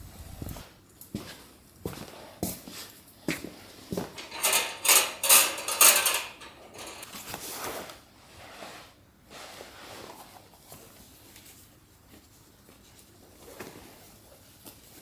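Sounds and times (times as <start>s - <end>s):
metal clattering and scraping: 4.0s - 7.4s
metal gear clicking: 4.2s - 7.2s.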